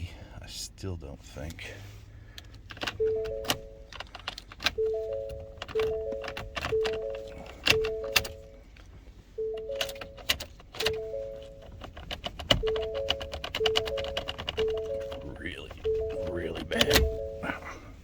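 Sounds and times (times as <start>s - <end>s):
key clicking in ignition lock: 2.4s - 8.5s, 9.5s - 15.3s
background music: 10.8s - 11.6s, 12.6s - 17.7s.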